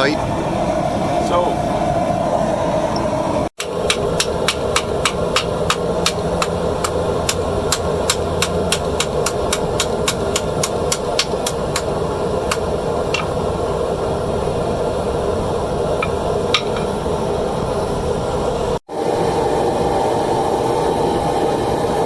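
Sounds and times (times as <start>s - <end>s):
steady hum: 0.0s - 22.0s
hammer striking iron on anvil: 3.6s - 11.9s, 12.5s - 13.4s, 16.0s - 17.0s.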